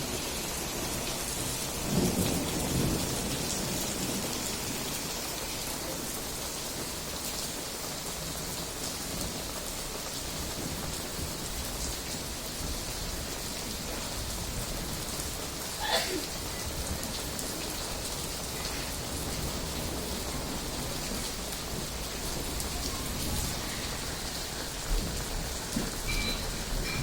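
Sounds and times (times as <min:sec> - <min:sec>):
steady rain hissing: 0:00.0 - 0:27.0
thunder rumbling: 0:00.9 - 0:05.2, 0:16.3 - 0:27.0.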